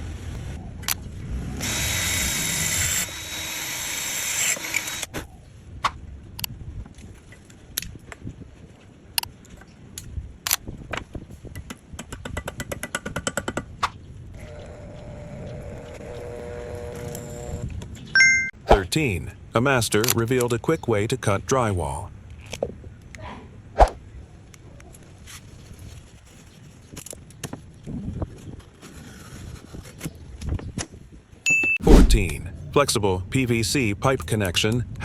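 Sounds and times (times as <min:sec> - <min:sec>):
power drill drilling: 0:01.6 - 0:05.1, 0:14.4 - 0:17.7.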